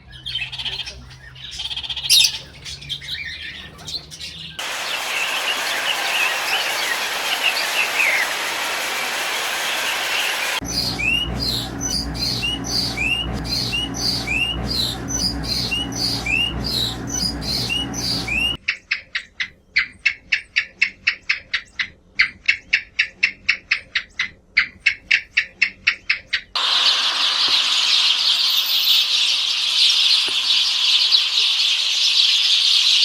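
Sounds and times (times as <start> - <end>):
sharp repeated bird calls: 0.4 - 8.4, 26.6 - 33.0
short rising bird chirps: 1.6 - 3.3, 10.3 - 18.6, 26.6 - 33.0
low hum: 8.3 - 18.6.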